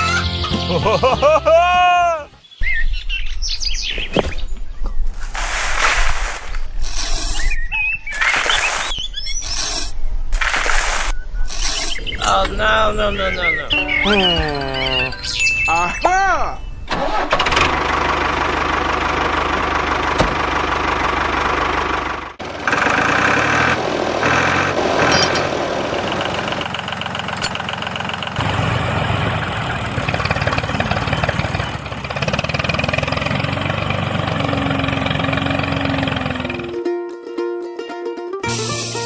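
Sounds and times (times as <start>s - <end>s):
tractor engine running: 16.9s - 36.8s.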